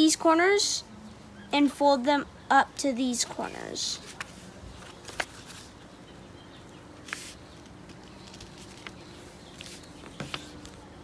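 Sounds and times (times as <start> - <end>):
paper crinkling while folded: 7.0 - 10.9.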